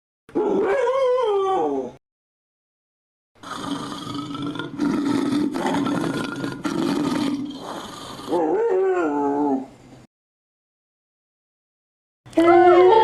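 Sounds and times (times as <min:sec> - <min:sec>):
wolf howl: 0:00.3 - 0:02.0, 0:08.3 - 0:09.7, 0:12.4 - 0:13.0
tiger roaring and growling: 0:03.4 - 0:09.7.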